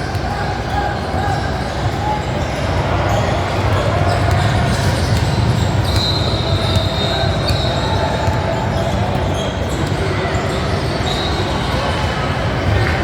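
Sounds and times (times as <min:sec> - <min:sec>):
crowd and player noise: 0:00.0 - 0:13.0
basketball bouncing on court: 0:03.1 - 0:10.6.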